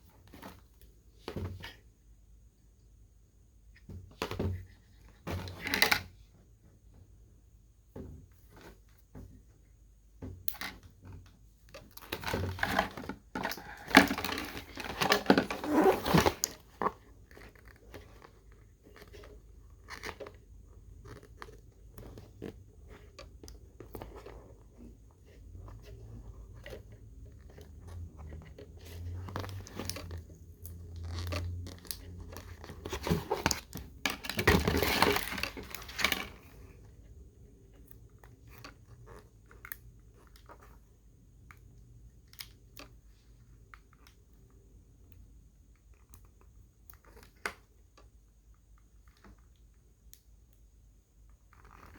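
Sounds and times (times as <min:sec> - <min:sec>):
packaging crinkling and tearing: 0:29.3 - 0:36.5.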